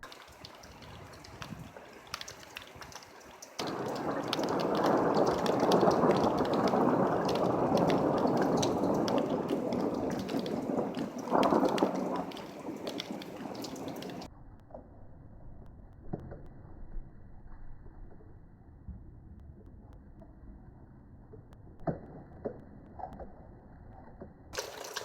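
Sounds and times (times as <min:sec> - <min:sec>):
rain dripping and pattering: 0:00.0 - 0:14.3, 0:17.4 - 0:25.0
thunder rumbling: 0:03.6 - 0:14.3.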